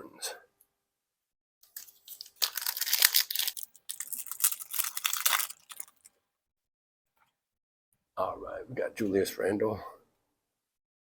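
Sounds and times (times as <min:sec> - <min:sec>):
foil wrapper tearing and crinkling: 0:01.7 - 0:06.1.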